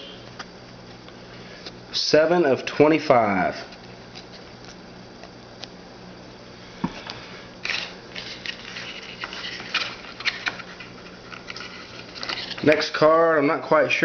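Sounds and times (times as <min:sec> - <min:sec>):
steady low hum: 0:00.0 - 0:14.0
trading cards rustling: 0:03.6 - 0:05.8, 0:06.9 - 0:13.0.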